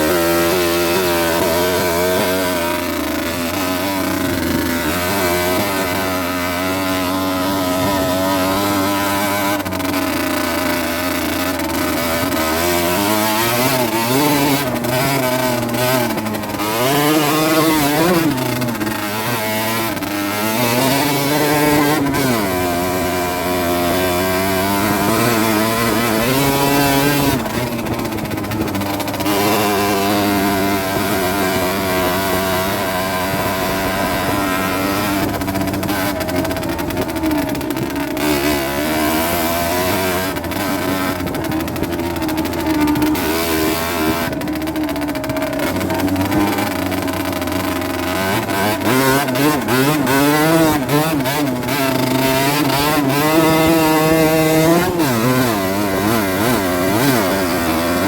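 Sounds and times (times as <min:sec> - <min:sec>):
moped engine revving: 0:00.0 - 0:58.0.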